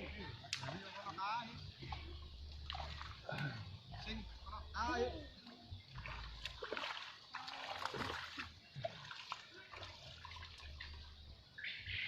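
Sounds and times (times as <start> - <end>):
water splashing and sloshing: 0.0 - 12.0.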